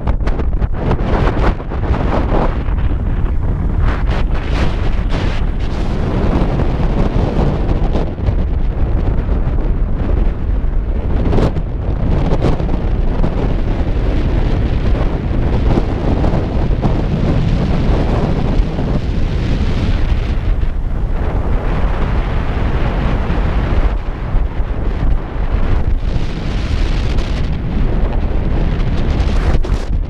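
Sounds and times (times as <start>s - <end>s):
wind rumbling on microphone: 0.0s - 30.0s.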